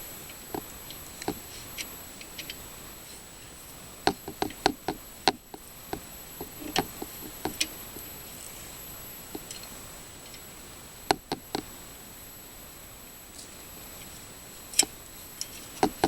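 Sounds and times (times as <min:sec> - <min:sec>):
hand tools clicking and tapping: 0:04.1 - 0:07.8, 0:14.8 - 0:16.0.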